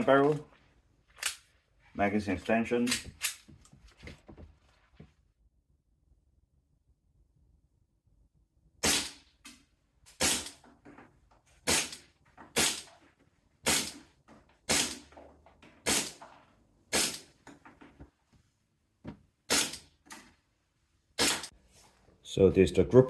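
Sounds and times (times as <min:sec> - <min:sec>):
airsoft pistol shots: 0:08.8 - 0:09.2, 0:14.7 - 0:15.0, 0:16.9 - 0:17.3, 0:21.2 - 0:21.5.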